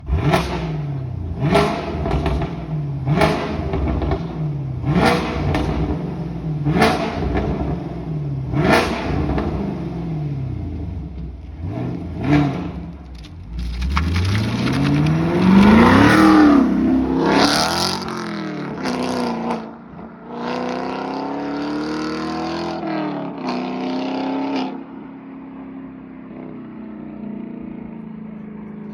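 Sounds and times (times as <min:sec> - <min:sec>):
car engine revving: 0:00.0 - 0:25.1
exhaust crackles and pops: 0:12.5 - 0:16.4
car accelerating past: 0:13.6 - 0:25.0.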